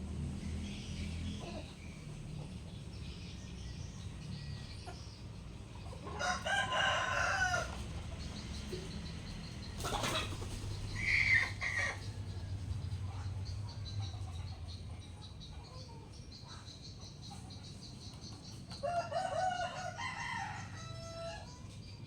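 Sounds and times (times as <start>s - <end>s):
rooster crowing: 6.2s - 7.9s, 18.8s - 21.6s.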